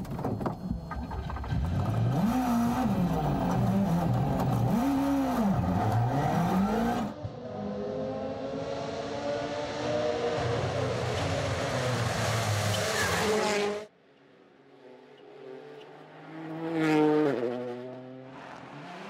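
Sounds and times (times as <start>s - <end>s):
rally car engine revving: 1.2s - 13.9s.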